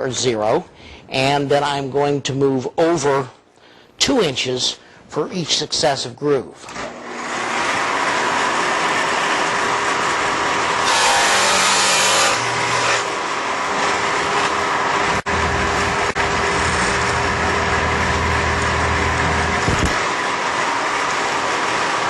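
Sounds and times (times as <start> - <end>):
table saw motor whining: 6.8 - 22.0
saw blade cutting wood: 6.9 - 14.6.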